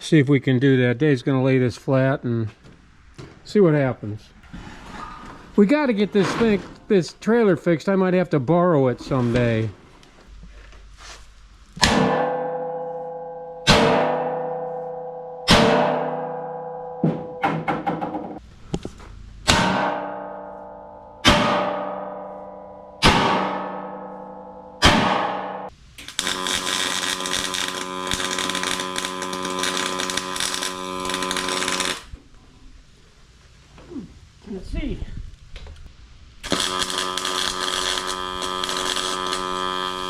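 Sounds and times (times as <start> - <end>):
sledgehammer ringing on steel: 11.8 - 17.7, 19.4 - 32.0.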